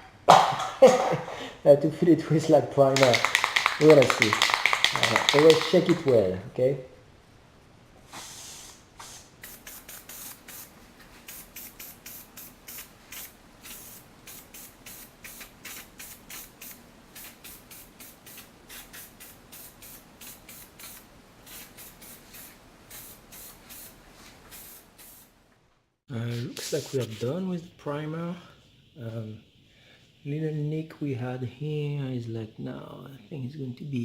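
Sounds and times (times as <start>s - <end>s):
aerosol spray hissing: 3.0s - 6.4s, 8.1s - 25.4s, 26.2s - 27.6s.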